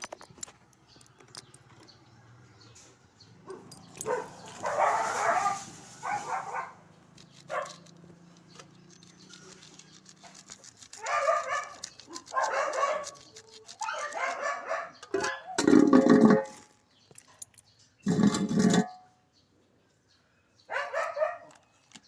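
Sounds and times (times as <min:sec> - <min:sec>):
dog barking and whining: 0:03.4 - 0:06.8, 0:07.4 - 0:07.9, 0:10.2 - 0:15.7, 0:20.7 - 0:21.6.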